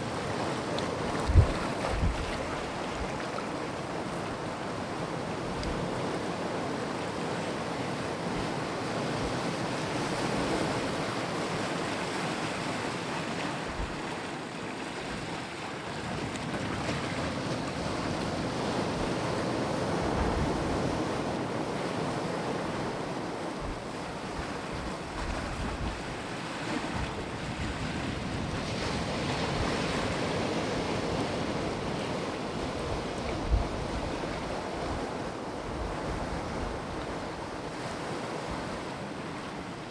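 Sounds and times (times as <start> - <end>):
sea waves washing on shore: 0.0 - 39.9
wind buffeting microphone: 1.0 - 3.2, 23.6 - 26.2, 26.9 - 38.8.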